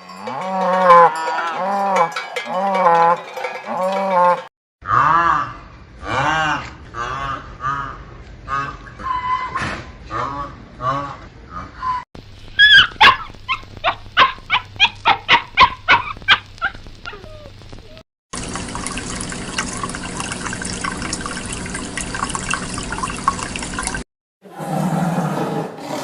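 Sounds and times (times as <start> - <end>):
dog yelping: 12.6 - 18.0.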